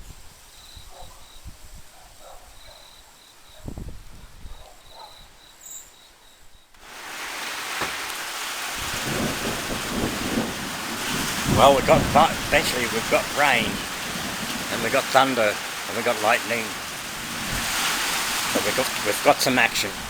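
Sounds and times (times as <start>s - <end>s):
high insect chirp: 0.3s - 6.7s
heavy rain hissing: 6.8s - 20.0s
low rumbling: 8.8s - 19.3s.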